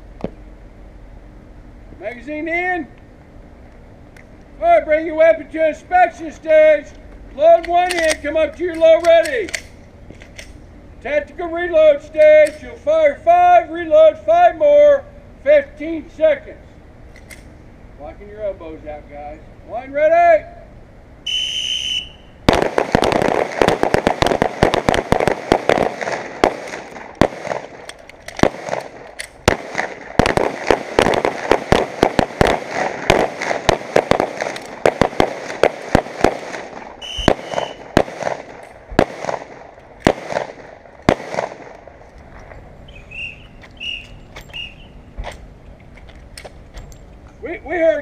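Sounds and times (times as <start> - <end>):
short whistle blast: 21.2 - 22.3, 37.0 - 37.8, 42.9 - 44.9
rapid pistol fire: 22.5 - 41.8.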